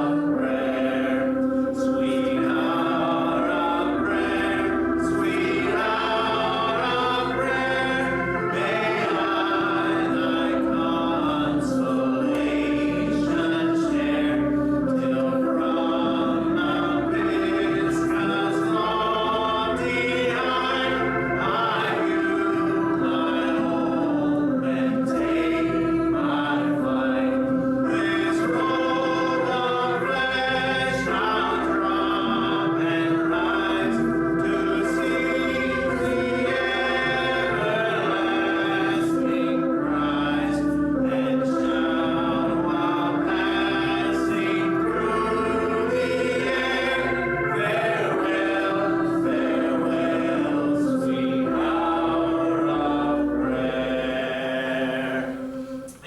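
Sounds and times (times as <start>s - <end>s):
sustained organ-like chords: 0.0s - 56.0s
voices singing: 0.0s - 56.0s.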